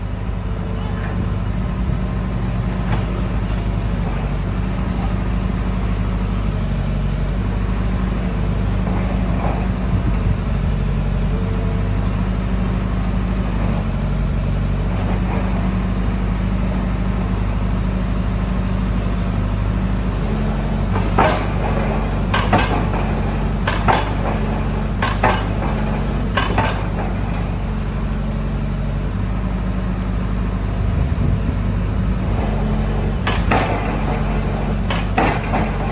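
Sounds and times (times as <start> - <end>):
diesel engine running under load: 0.0 - 35.9
sharp knocks: 20.9 - 27.5, 33.1 - 35.9.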